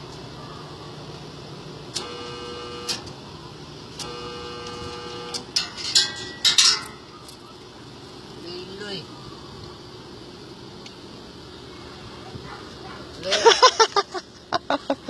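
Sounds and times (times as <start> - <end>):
steady hum: 0.0 - 15.0
welding machine buzzing: 1.9 - 7.0.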